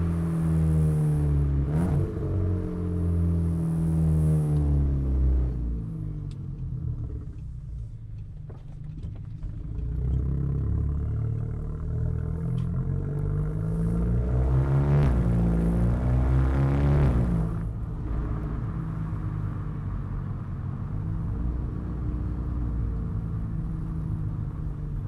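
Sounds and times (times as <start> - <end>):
car exhaust accelerating: 9.1 - 25.0.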